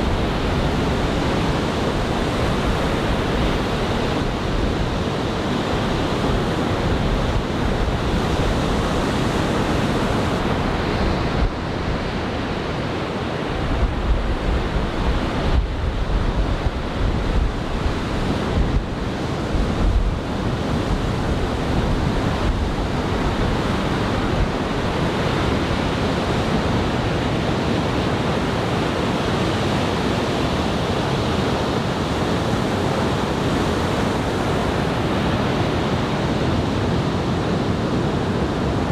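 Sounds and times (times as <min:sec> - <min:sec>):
wind buffeting microphone: 0:00.0 - 0:29.3
surf breaking on beach: 0:00.0 - 0:37.3.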